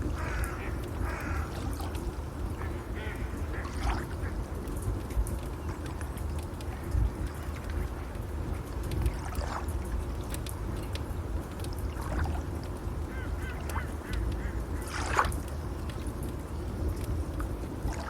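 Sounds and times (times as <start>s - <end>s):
water and waves rushing: 0.0s - 5.2s, 8.4s - 10.6s, 11.4s - 16.0s, 16.8s - 18.0s.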